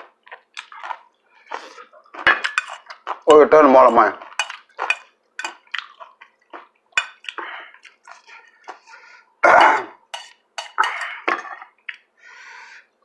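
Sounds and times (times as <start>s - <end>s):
cutlery clinking on a dish: 2.2s - 3.0s, 3.8s - 5.6s, 7.0s - 7.3s, 9.6s - 11.7s.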